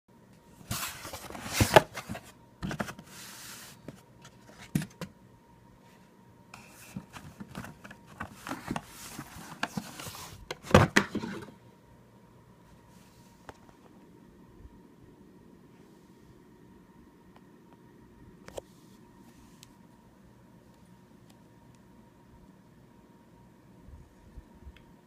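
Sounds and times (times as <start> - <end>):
packaging rustling and sliding: 0.6 - 5.0, 6.6 - 11.5.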